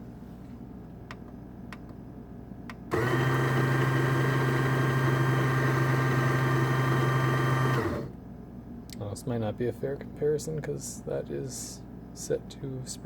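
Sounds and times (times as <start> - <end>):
coffee grinder motor whining: 2.9 - 8.2.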